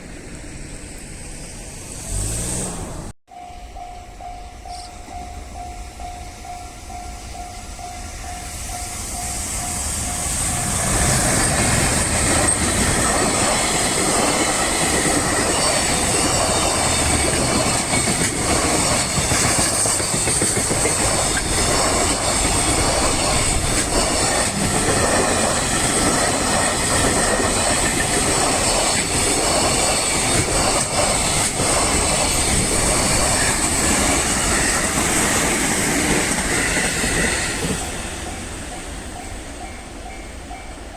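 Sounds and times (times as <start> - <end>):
freight train passing: 0.0 - 40.9
level-crossing warning bell: 3.3 - 40.9
wheels clicking over rail joints: 10.2 - 40.6.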